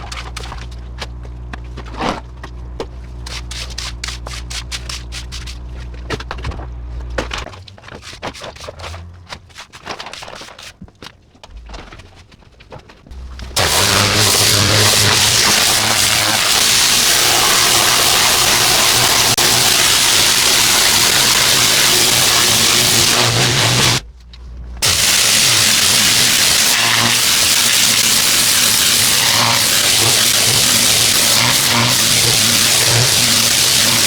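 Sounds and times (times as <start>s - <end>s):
engine humming: 0.0s - 7.8s, 13.1s - 26.7s
pressure washer spray hissing: 13.6s - 24.0s, 24.8s - 34.0s.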